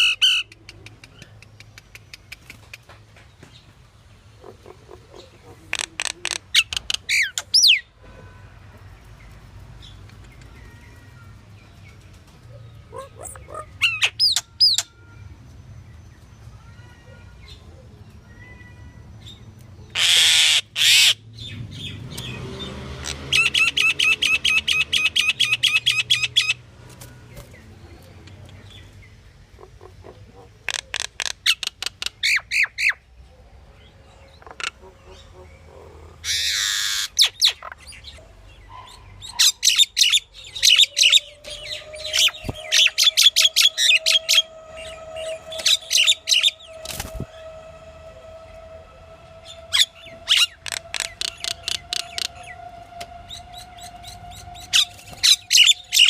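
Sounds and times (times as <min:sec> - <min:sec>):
bird harsh chattering calls: 0:04.3 - 0:07.9, 0:12.8 - 0:14.9, 0:19.9 - 0:21.2, 0:28.8 - 0:33.1, 0:34.3 - 0:47.2, 0:49.4 - 0:52.6, 0:53.3 - 0:56.0
bird loud screech: 0:36.2 - 0:37.7, 0:39.4 - 0:56.0.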